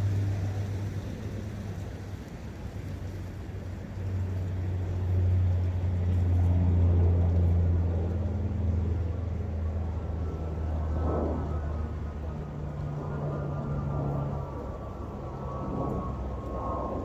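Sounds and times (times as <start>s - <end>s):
running brook water: 0.0s - 10.6s
passing motor engine drone: 0.0s - 17.0s.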